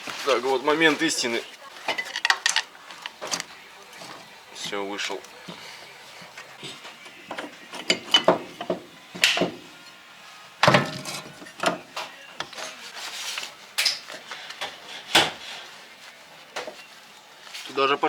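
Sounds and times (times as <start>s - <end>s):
metallic clanks of tools: 1.9s - 4.2s, 6.6s - 10.0s, 10.6s - 12.8s, 13.8s - 15.6s.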